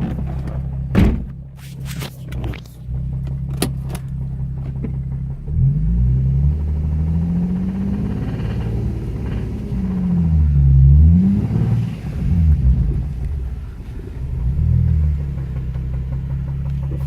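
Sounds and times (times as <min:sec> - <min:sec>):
car engine running: 0:00.0 - 0:17.0
sharp engine clicks: 0:13.1 - 0:17.0.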